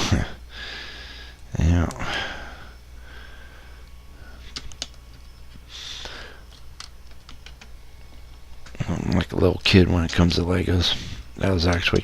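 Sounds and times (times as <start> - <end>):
steady low hum: 0.0 - 12.0
small plastic clicks: 3.8 - 5.6, 6.5 - 10.4.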